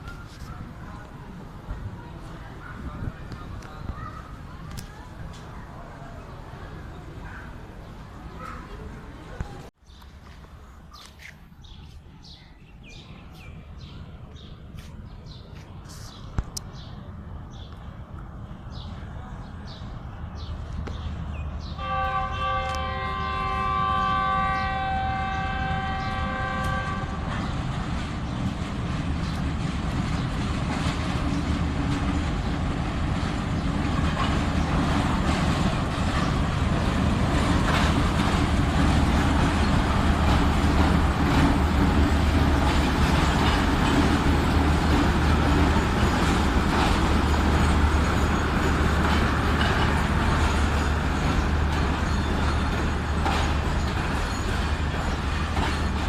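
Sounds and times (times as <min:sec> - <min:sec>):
train rumble: 0:00.0 - 0:56.0
locomotive engine drone: 0:13.6 - 0:56.0
locomotive horn chord: 0:21.8 - 0:27.3
wheels clicking over rail joints: 0:26.1 - 0:56.0.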